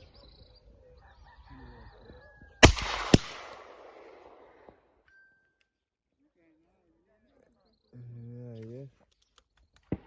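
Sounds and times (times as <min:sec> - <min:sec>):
shotgun shots with echo: 0:02.6 - 0:04.8.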